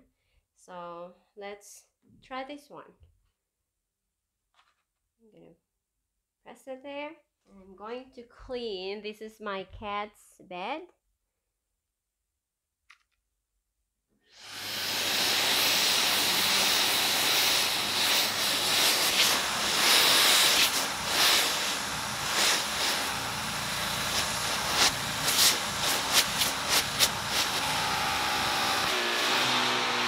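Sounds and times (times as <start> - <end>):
vacuum cleaner suction hiss: 14.3 - 30.0.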